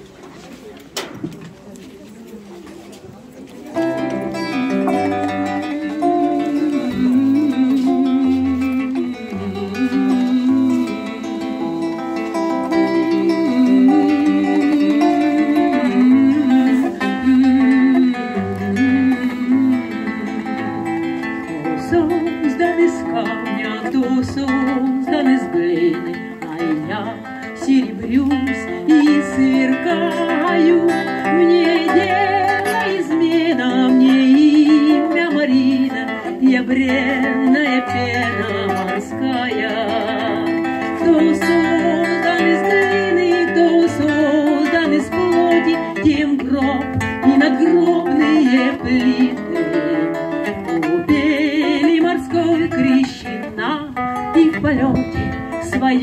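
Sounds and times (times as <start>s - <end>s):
acoustic guitar music: 2.5s - 56.0s
person singing: 3.8s - 56.0s.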